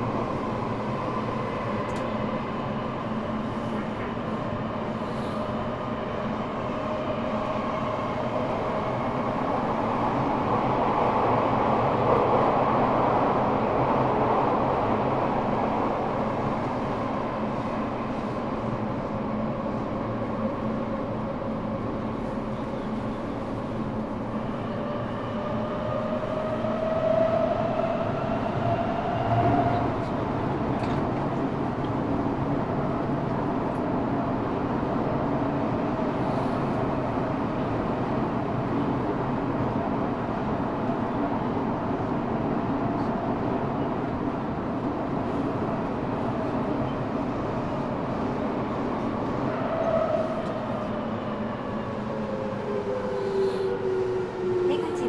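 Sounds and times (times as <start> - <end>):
subway train running noise: 0.0 - 55.0.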